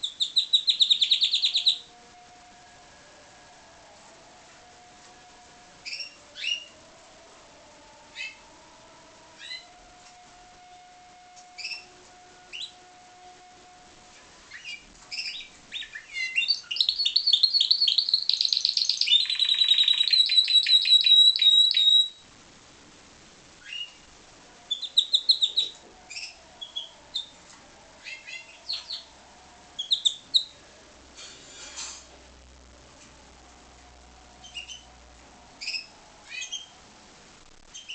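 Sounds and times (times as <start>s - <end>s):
canary singing chirps and trills: 0.0s - 2.2s, 5.8s - 6.9s, 7.9s - 8.5s, 9.2s - 10.0s, 10.6s - 13.8s, 14.4s - 22.3s, 23.6s - 30.6s, 34.3s - 36.8s, 37.7s - 37.9s.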